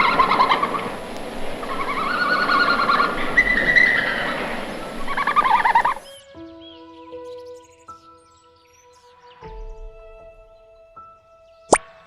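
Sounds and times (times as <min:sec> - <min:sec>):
red panda squealing chirps: 0:00.0 - 0:01.0, 0:01.6 - 0:06.2.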